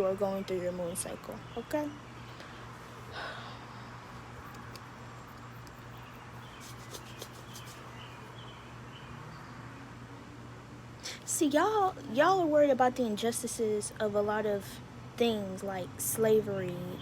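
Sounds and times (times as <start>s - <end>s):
soft breath: 2.3s - 4.2s.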